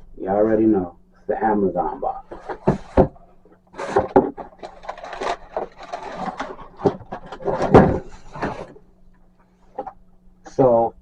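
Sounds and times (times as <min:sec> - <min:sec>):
cardboard box being handled: 0:03.8 - 0:08.8.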